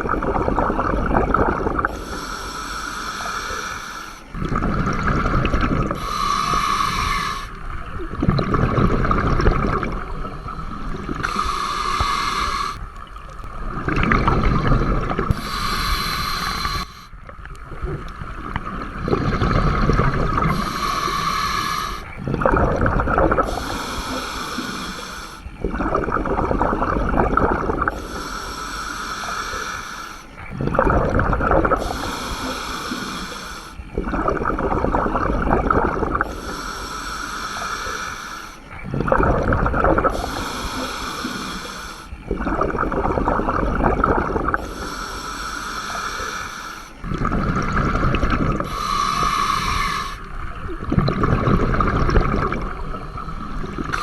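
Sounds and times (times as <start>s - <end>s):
bubbling exhale: 0.0s - 54.0s
regulator hissing inhale: 1.8s - 5.2s, 5.8s - 7.8s, 9.8s - 12.8s, 15.3s - 17.2s, 19.0s - 22.2s, 23.4s - 25.6s, 27.9s - 30.5s, 31.7s - 33.9s, 35.9s - 38.8s, 40.0s - 42.2s, 44.4s - 47.0s, 47.9s - 50.4s.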